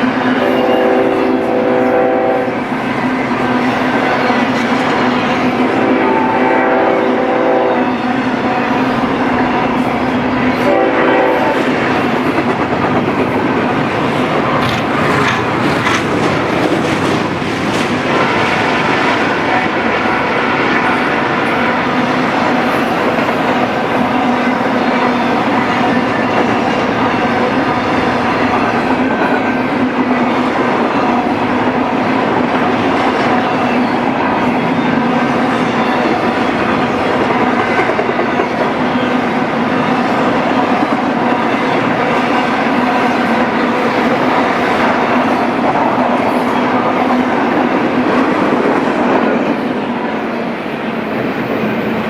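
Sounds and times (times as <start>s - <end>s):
freight train wheels rumbling: 0.0s - 52.0s
locomotive air horn: 0.2s - 2.8s, 3.6s - 12.2s.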